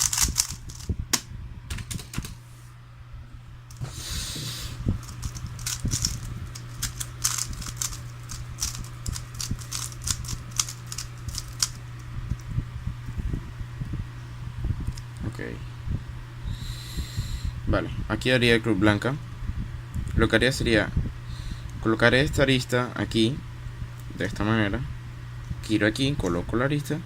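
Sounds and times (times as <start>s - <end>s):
plastic puzzle cube clicking: 0.0s - 0.9s, 5.3s - 11.8s
low steady hum: 0.0s - 27.0s.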